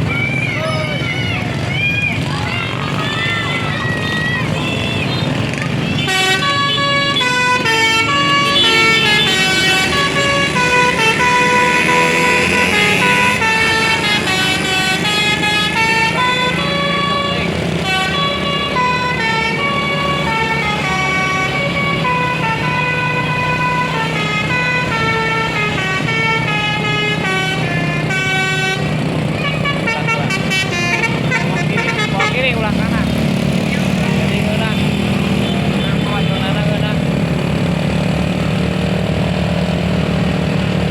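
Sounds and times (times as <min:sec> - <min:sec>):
bus musical air horn melody: 0:03.1 - 0:32.8.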